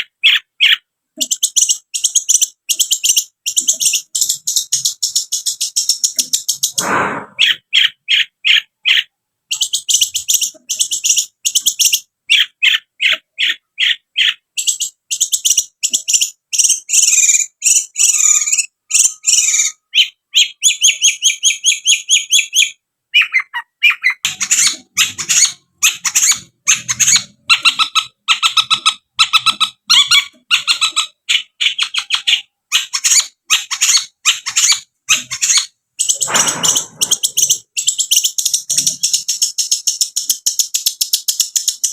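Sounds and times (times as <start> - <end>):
bird singing sharp high notes: 36.0 - 38.0.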